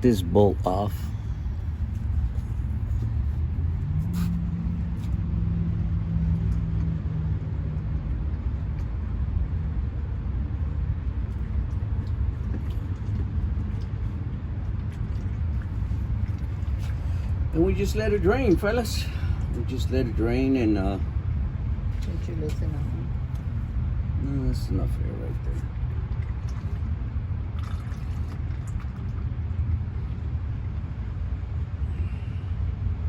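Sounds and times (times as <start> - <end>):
low engine rumble: 0.0 - 33.0
low steady hum: 0.0 - 33.0.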